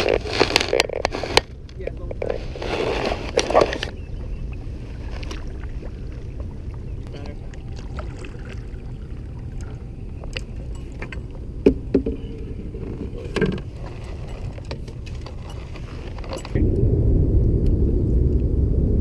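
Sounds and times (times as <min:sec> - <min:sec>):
steady low rumble: 0:03.9 - 0:19.0.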